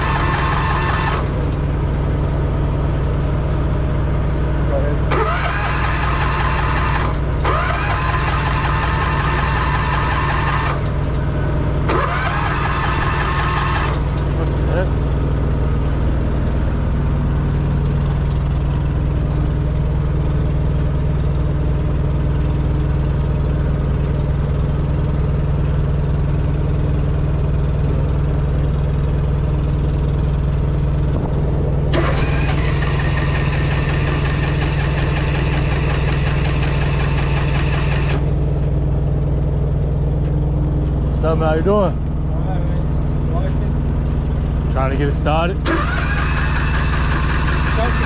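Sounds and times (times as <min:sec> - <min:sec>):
starter motor cranking: 0:00.0 - 0:02.2, 0:03.7 - 0:16.8, 0:31.1 - 0:38.8, 0:40.2 - 0:48.0
large engine idling: 0:00.0 - 0:48.0.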